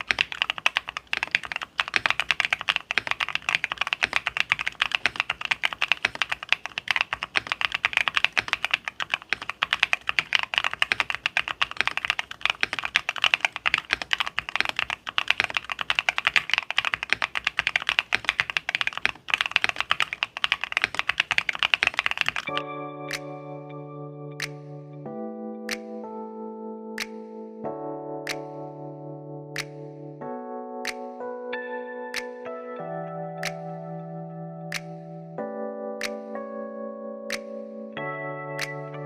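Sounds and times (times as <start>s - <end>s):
mechanical keyboard typing: 0.0s - 23.3s.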